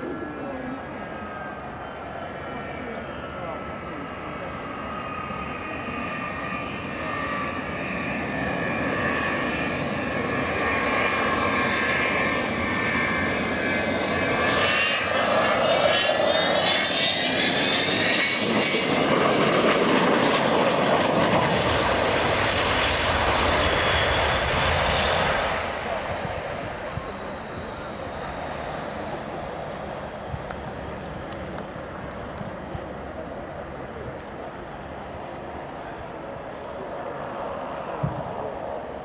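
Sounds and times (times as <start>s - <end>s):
aircraft engines flying past: 0.0s - 39.0s.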